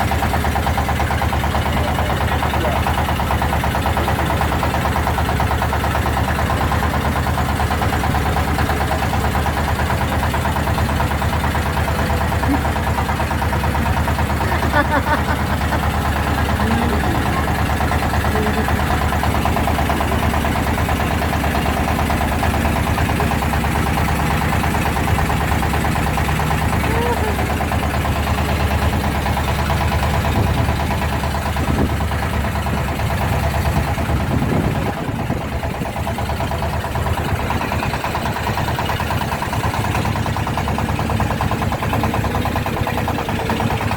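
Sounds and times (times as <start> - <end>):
boat engine throbbing: 0.0 - 43.9
faint voices: 5.8 - 20.0, 26.6 - 29.0.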